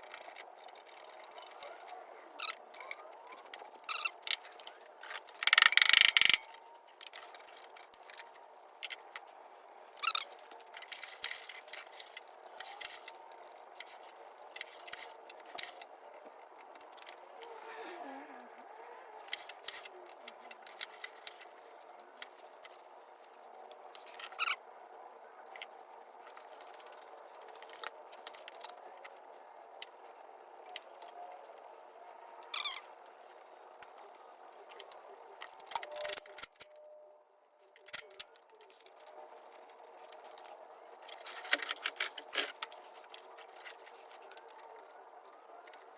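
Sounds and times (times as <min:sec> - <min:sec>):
hand tools clicking and scraping: 0:00.0 - 0:09.3, 0:10.0 - 0:15.9, 0:18.4 - 0:22.8, 0:37.8 - 0:45.0.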